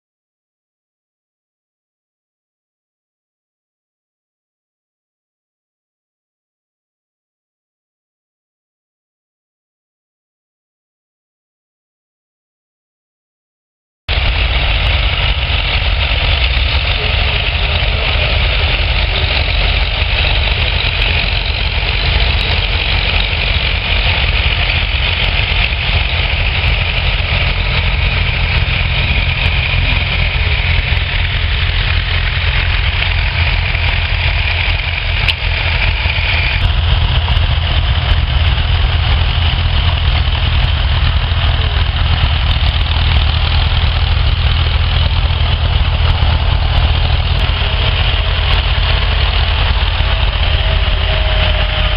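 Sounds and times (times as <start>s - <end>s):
tractor engine running: 14.1s - 51.9s.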